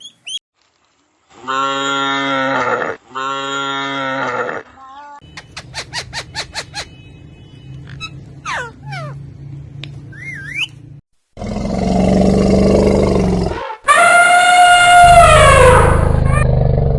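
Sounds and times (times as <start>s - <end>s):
animal rough roar: 11.4s - 16.9s
long clear animal call: 13.3s - 16.6s.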